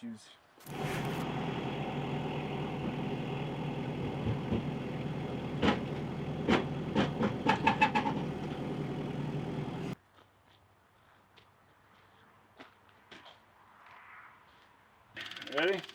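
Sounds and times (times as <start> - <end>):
diesel engine cranking on starter: 0.6 - 10.0, 15.2 - 15.9.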